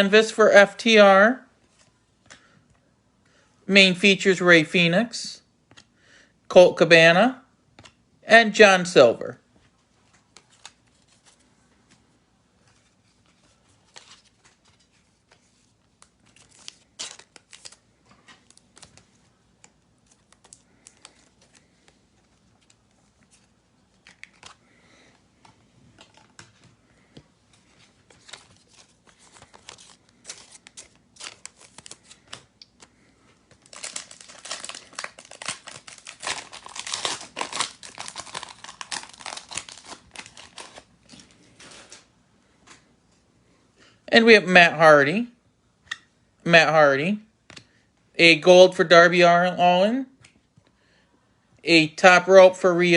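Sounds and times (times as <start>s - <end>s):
trading cards clicking and rustling: 12.7s - 42.1s
card pack wrapper tearing: 16.0s - 17.8s, 28.2s - 32.9s, 33.5s - 42.0s.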